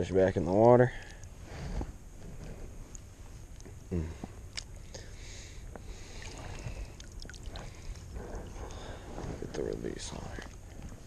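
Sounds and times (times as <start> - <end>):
water drips: 5.8 - 8.9
water sloshing and splashing: 5.9 - 11.0.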